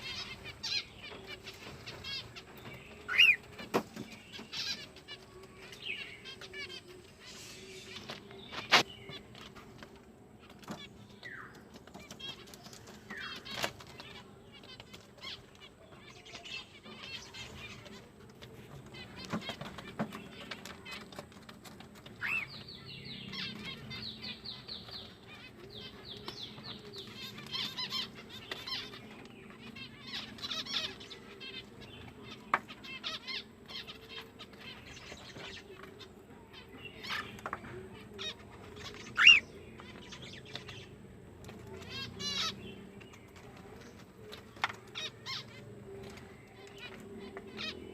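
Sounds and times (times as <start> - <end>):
small bird chirping: 10.4 - 47.9.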